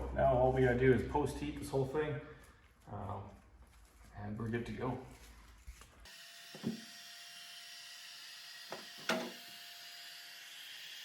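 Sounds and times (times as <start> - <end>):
heat gun whining: 6.1 - 11.0.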